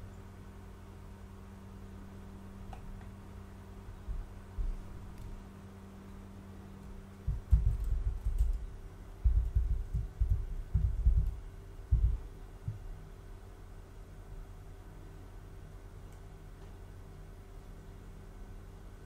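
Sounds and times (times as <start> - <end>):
electrical hum: 0.0 - 19.0
deep muffled thumps: 4.0 - 5.2, 7.2 - 13.0.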